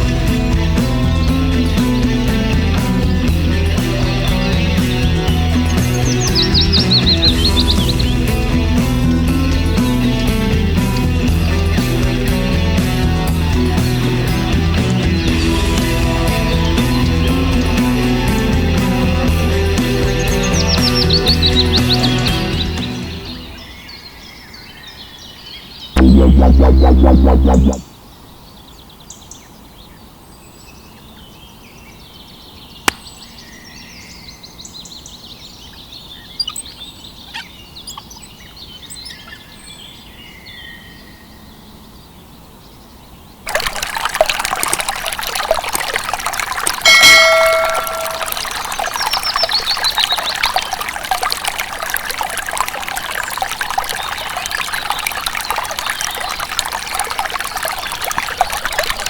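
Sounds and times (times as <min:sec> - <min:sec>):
water pouring and trickling: 0:26.0 - 0:27.8, 0:43.5 - 0:59.0.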